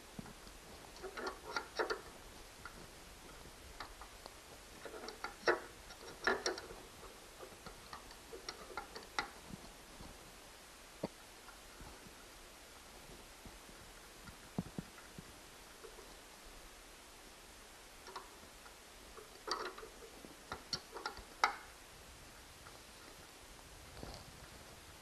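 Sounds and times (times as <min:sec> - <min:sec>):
hand tools clicking and tapping: 0:00.2 - 0:04.2, 0:04.8 - 0:09.4, 0:19.2 - 0:21.7.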